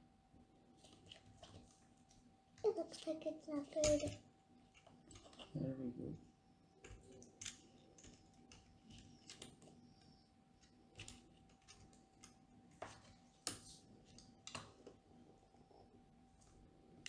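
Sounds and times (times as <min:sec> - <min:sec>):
plastic pieces clicking together: 0:06.8 - 0:09.8.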